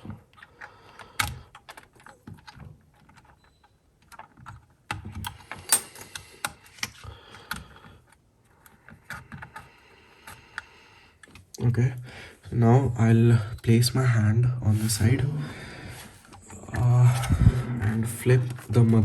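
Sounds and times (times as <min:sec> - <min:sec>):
cable and plastic clicks and rustles: 0:00.0 - 0:11.6.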